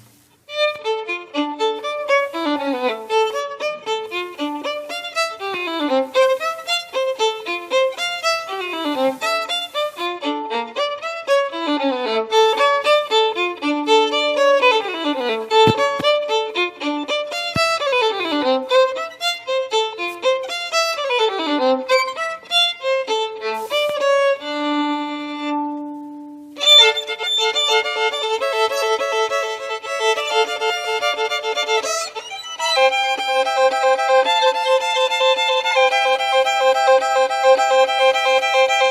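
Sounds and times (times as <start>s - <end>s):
solo instrumental music: 0.0s - 38.9s.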